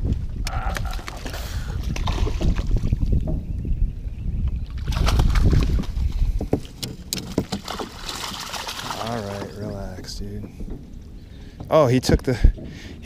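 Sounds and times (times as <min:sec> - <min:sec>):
wind rumbling on microphone: 0:00.0 - 0:13.0.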